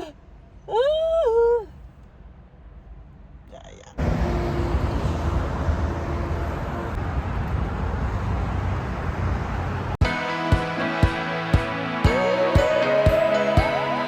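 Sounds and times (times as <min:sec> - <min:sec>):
moving car road and engine noise: 0:02.7 - 0:10.0.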